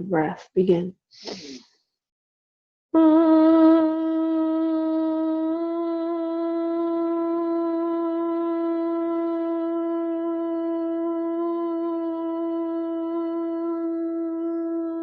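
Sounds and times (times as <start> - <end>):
person humming a steady note: 3.0 - 15.0.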